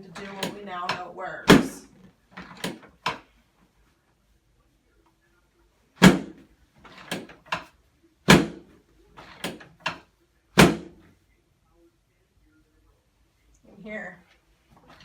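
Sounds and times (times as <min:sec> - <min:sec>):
table dropping with clunks: 0:06.0 - 0:07.7, 0:08.3 - 0:08.7.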